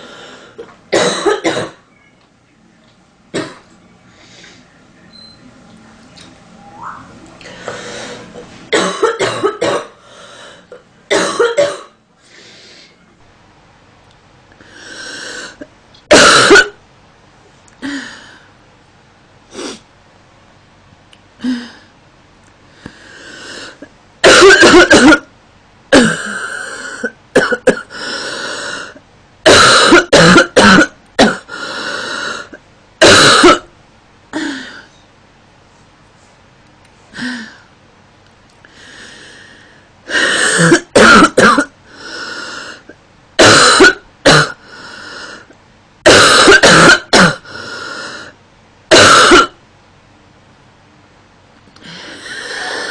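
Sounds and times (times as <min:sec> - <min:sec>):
woman coughing: 0:01.0 - 0:01.8, 0:03.4 - 0:03.6, 0:08.7 - 0:10.0, 0:11.1 - 0:12.0, 0:16.1 - 0:16.8, 0:24.2 - 0:25.3, 0:25.9 - 0:27.9, 0:29.5 - 0:31.5, 0:33.0 - 0:33.7, 0:40.4 - 0:41.7, 0:43.4 - 0:44.6, 0:46.1 - 0:47.4, 0:48.9 - 0:49.6.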